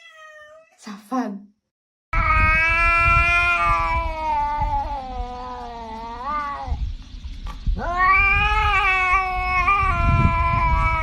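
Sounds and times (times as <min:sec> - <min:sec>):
cat yowling: 0:00.0 - 0:00.8, 0:02.2 - 0:06.8, 0:07.8 - 0:11.0.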